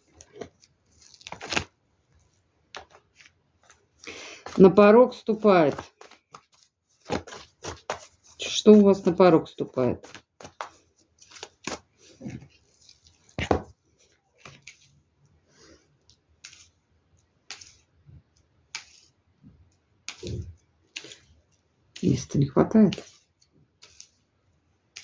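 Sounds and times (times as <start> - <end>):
cards clicking and tapping on table: 2.8 - 3.0, 5.7 - 8.1.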